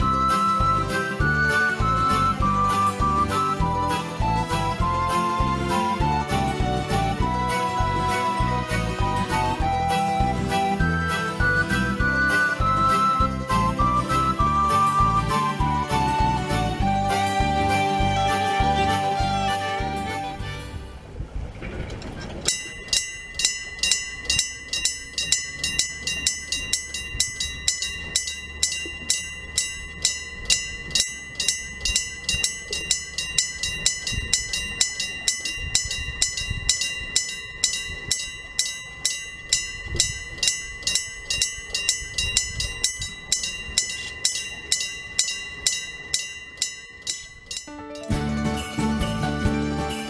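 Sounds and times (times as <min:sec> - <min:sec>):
level crossing warning bell ringing: 0:00.0 - 0:20.4, 0:22.4 - 0:50.0.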